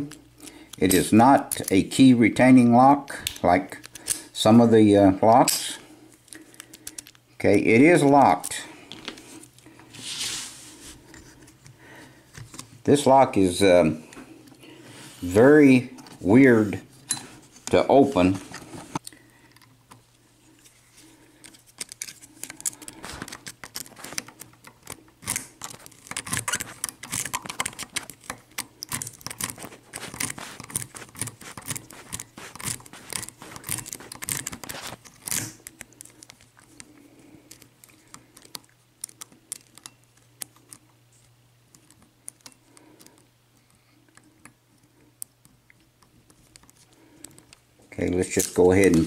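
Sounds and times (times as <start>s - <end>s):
padlock clicking and rattling: 6.5s - 7.2s, 21.4s - 40.8s.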